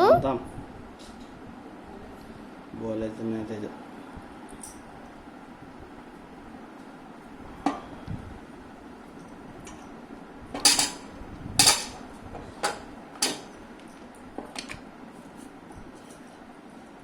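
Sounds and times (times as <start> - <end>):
hard objects clattering: 10.7 - 12.0, 12.6 - 13.6.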